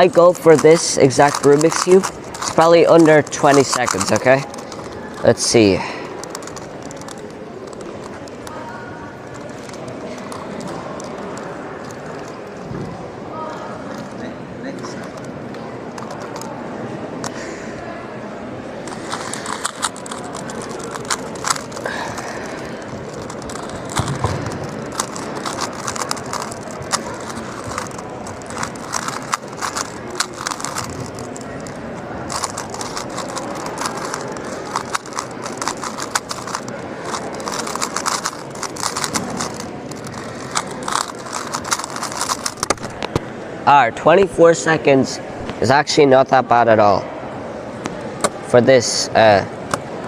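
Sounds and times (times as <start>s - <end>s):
puzzle cube plastic clicks: 0.0s - 8.6s, 9.2s - 12.4s, 15.9s - 16.5s, 18.8s - 43.3s.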